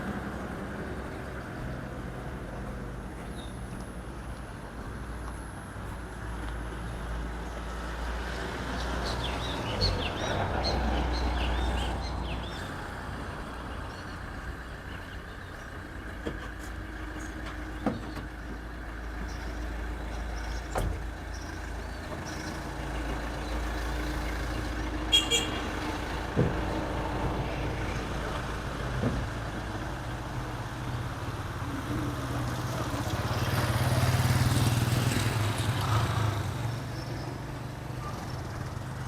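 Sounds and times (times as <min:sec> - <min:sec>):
vehicle engine rumbling: 0:00.0 - 0:39.0.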